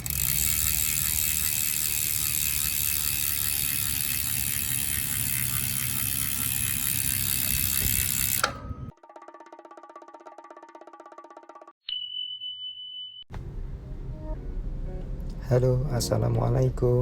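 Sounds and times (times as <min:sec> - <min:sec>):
bike freehub ratcheting: 0:00.0 - 0:08.9.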